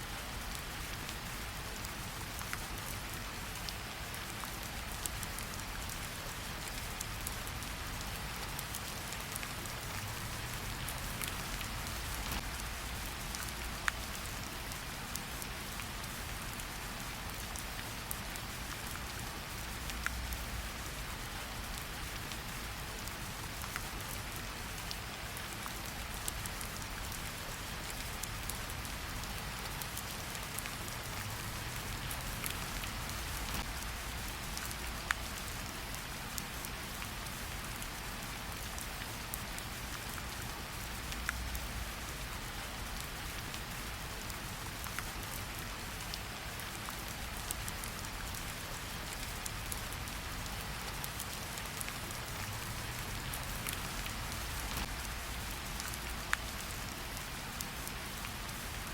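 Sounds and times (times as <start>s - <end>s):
steady rain hiss: 0.0s - 58.9s
raindrops ticking: 8.1s - 16.7s, 27.8s - 39.0s, 46.1s - 57.2s.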